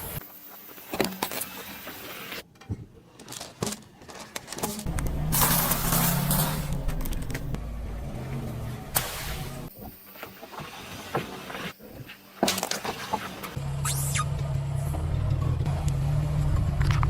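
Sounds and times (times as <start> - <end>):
tyres rolling: 3.0 - 9.7
car engine running: 4.8 - 9.7, 13.6 - 17.0.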